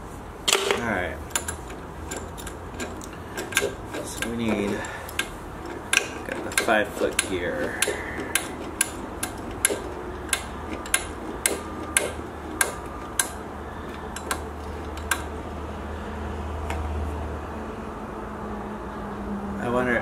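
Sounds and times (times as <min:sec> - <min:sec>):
metal tools tapping and clinking: 0:00.5 - 0:15.3.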